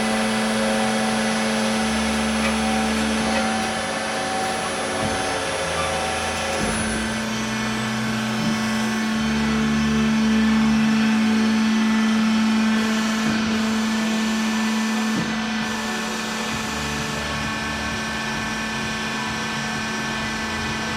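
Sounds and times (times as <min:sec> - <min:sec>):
band saw machine hum: 0:00.0 - 0:20.9
lower machine hum: 0:00.0 - 0:20.9.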